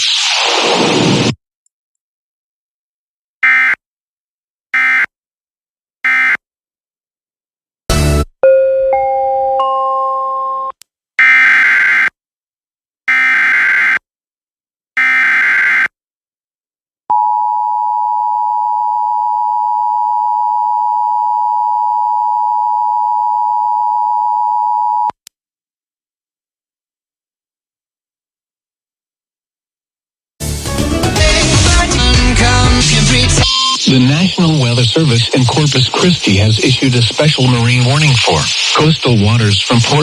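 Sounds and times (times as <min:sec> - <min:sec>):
data screech bursts: 0:00.0 - 0:01.3, 0:33.4 - 0:40.0.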